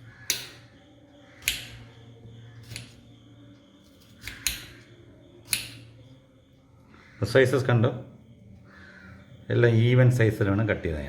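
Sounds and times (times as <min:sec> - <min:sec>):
knife cutting raw potato: 0:01.4 - 0:01.9, 0:02.6 - 0:03.0, 0:03.8 - 0:05.9.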